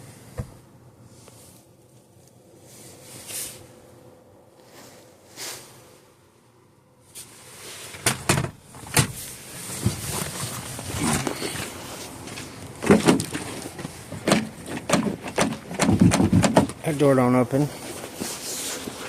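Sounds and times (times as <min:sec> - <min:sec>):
handling noise: 0:07.2 - 0:19.0
clicks and knocks of car door handles: 0:12.8 - 0:16.8.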